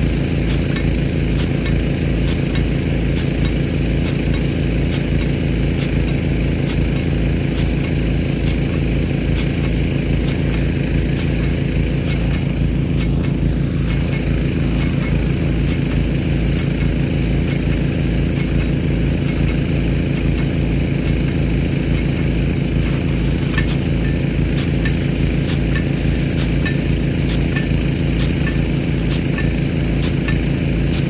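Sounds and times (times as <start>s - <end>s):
engine-like pump drone: 0.0s - 31.0s
sprinkler water jet hissing: 0.0s - 31.0s
faint regular ticks: 22.8s - 31.0s.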